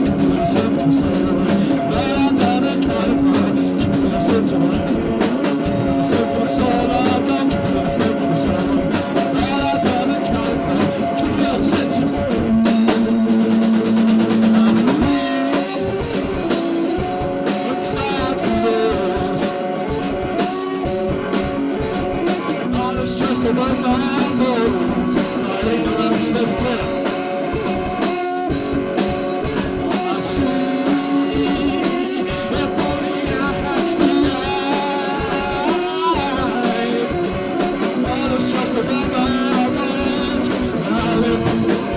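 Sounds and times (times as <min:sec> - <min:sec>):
drum kit beat: 0:00.0 - 0:41.9
electric guitars: 0:00.0 - 0:41.9.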